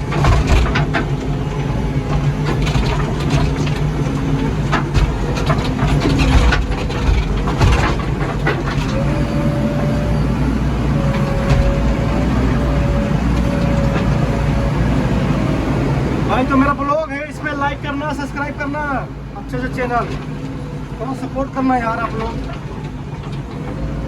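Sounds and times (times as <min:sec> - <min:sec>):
knocks and rattles: 0:00.0 - 0:16.7
backhoe diesel engine running: 0:00.0 - 0:24.0.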